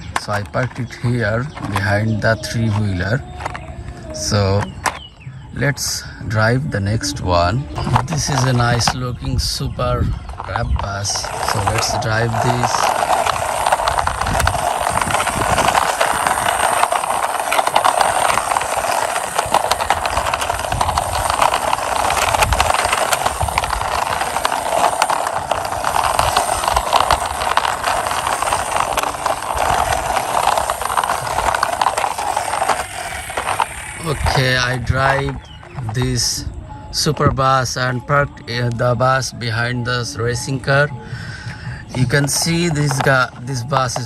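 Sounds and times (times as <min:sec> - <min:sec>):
plastic toy wheels rolling on wall: 0:00.0 - 0:44.0.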